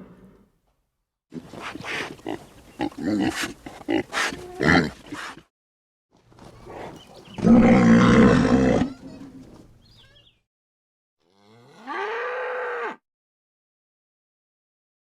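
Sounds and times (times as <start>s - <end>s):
animal grunts: 1.3s - 5.5s, 6.6s - 9.3s
large animal roaring: 7.4s - 8.9s.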